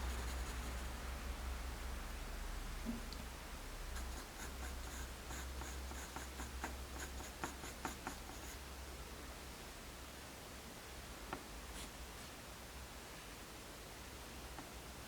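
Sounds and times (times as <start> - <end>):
pencil scratching on paper: 0.0 - 0.9, 4.0 - 8.6.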